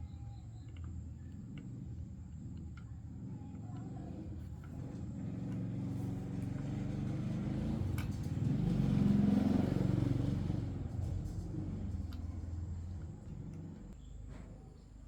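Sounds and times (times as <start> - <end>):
vehicle engine passing by: 4.9 - 14.0.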